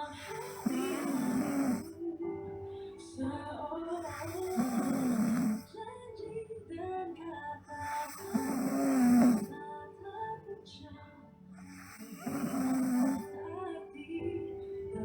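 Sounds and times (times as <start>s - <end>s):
girl snoring: 0.0s - 2.0s, 4.0s - 5.7s, 7.7s - 9.6s, 11.6s - 13.3s
background music: 0.0s - 15.0s.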